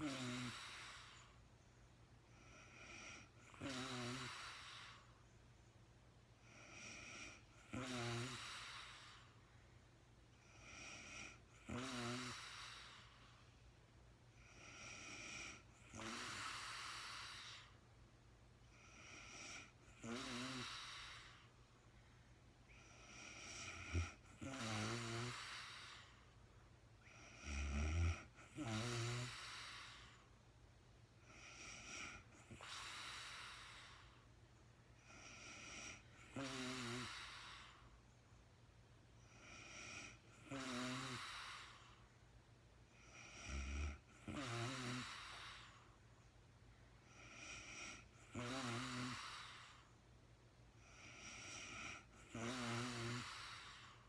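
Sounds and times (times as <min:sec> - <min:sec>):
woman snoring: 0:00.0 - 0:01.4, 0:02.3 - 0:05.2, 0:06.4 - 0:09.4, 0:10.4 - 0:13.3, 0:14.4 - 0:17.8, 0:18.7 - 0:21.6, 0:22.7 - 0:26.3, 0:27.0 - 0:30.3, 0:31.2 - 0:34.2, 0:35.0 - 0:37.9, 0:39.2 - 0:42.0, 0:43.0 - 0:45.9, 0:47.1 - 0:49.9, 0:50.8 - 0:54.0.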